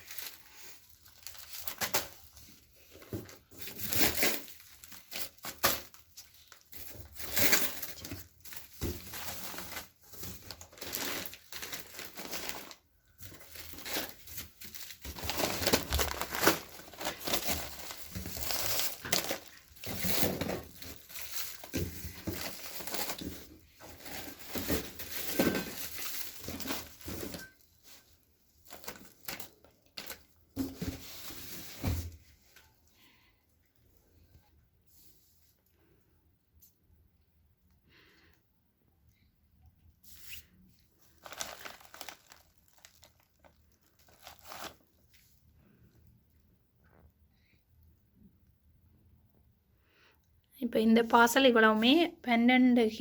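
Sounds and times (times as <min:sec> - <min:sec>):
packaging tearing and crumpling: 0:00.0 - 0:02.5, 0:03.3 - 0:27.4, 0:28.6 - 0:30.4, 0:41.0 - 0:45.2.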